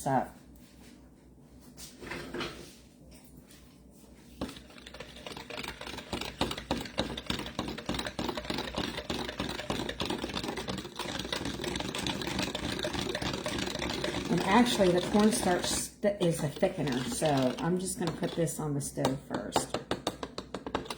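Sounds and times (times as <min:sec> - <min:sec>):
utensil clicking against bowl: 0:04.4 - 0:15.8, 0:19.0 - 0:20.9.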